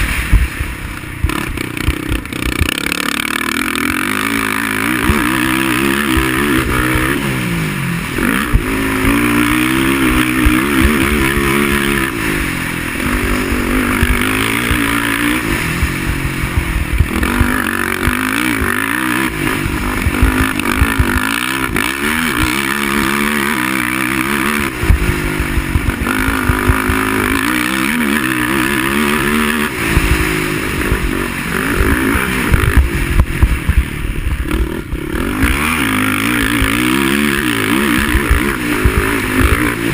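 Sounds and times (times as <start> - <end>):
quad engine revving: 0.0 - 39.9.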